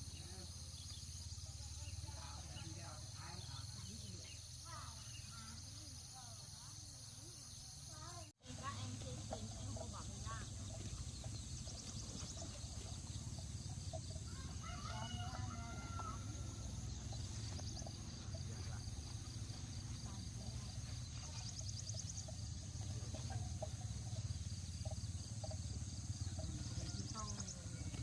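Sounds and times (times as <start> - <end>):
high insect trills: 0.0 - 28.0
low outdoor rumble: 8.4 - 28.0
rooster crowing: 14.1 - 16.8.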